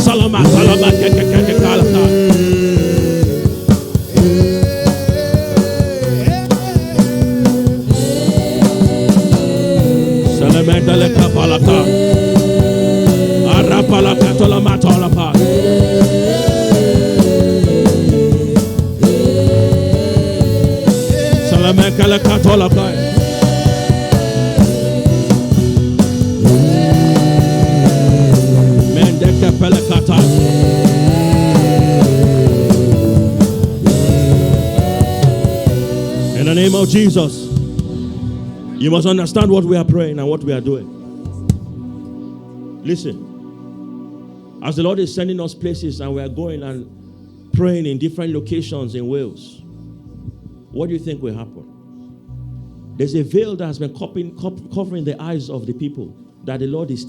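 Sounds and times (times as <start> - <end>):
drum kit beat: 0.0 - 38.7
sustained singing or chords: 0.0 - 53.2.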